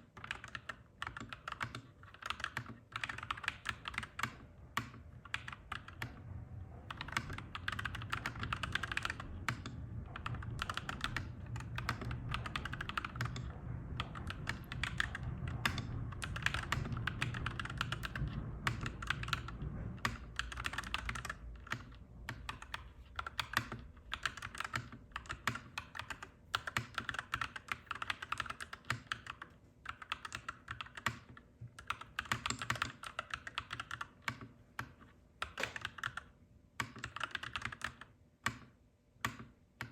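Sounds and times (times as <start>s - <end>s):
mechanical keyboard typing: 0.0s - 6.2s, 6.9s - 39.9s
low rumble: 4.3s - 25.3s.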